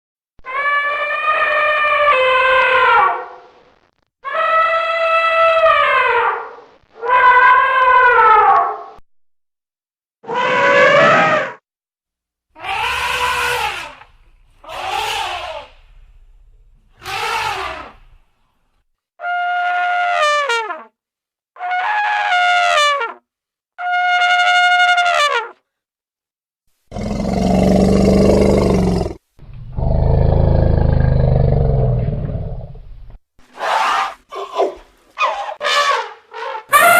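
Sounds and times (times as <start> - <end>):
elephant trumpeting: 10.2 - 11.6, 12.6 - 15.9, 16.9 - 18.2, 35.2 - 36.9.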